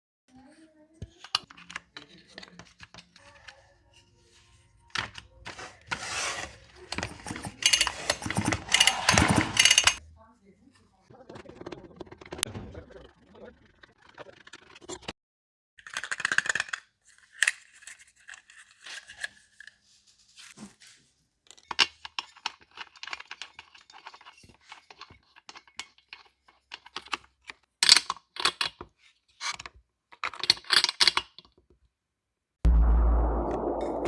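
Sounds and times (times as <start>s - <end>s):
tools clicking and tapping: 7.0s - 10.0s.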